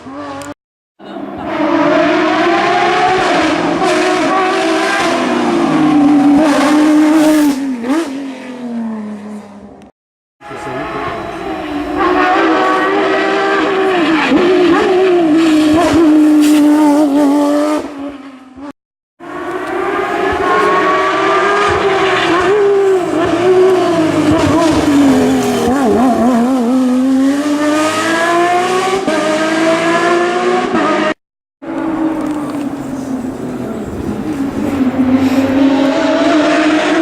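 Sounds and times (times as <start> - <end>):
rally car engine revving: 0.0 - 9.5, 10.4 - 37.0.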